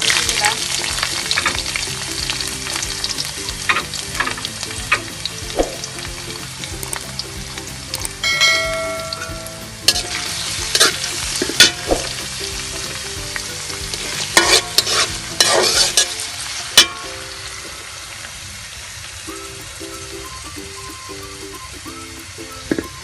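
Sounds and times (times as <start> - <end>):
onions sizzling in hot oil: 0.0 - 23.0
spatula scraping a pan: 9.9 - 12.1, 13.9 - 16.9.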